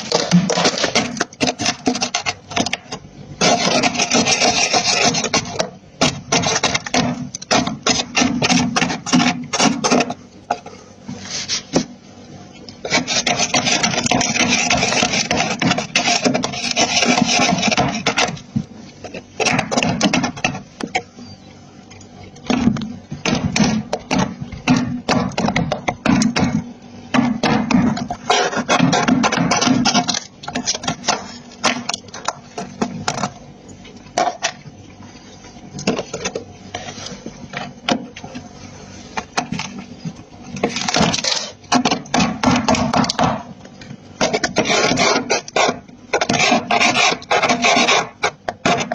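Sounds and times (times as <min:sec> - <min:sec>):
freezer frost being scraped: 0:00.0 - 0:02.8, 0:03.4 - 0:10.2, 0:11.1 - 0:11.9, 0:12.8 - 0:18.5, 0:27.7 - 0:33.3, 0:35.3 - 0:37.7, 0:38.4 - 0:43.2, 0:44.2 - 0:48.9.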